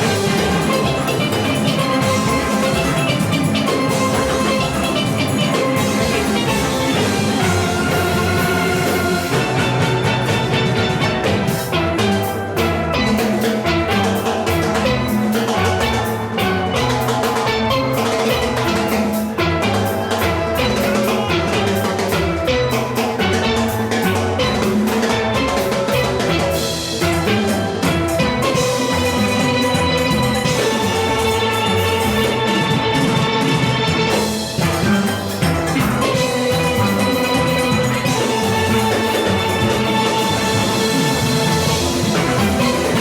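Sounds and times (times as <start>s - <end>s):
drum kit and percussion: 0.0s - 43.0s
steel pans playing melody: 0.0s - 43.0s.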